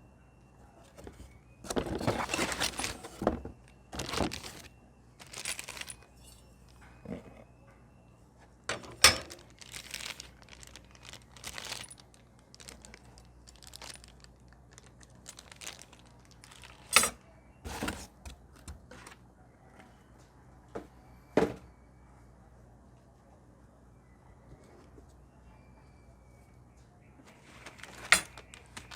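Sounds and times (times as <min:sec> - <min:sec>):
packaging rustling and crinkling: 0:01.0 - 0:06.1, 0:08.8 - 0:17.1, 0:27.3 - 0:28.9.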